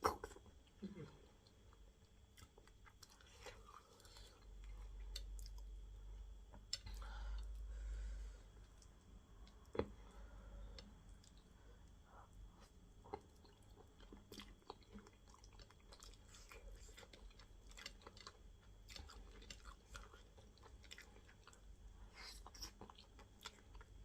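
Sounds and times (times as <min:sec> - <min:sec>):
chewing and lip smacking: 0:12.6 - 0:24.0.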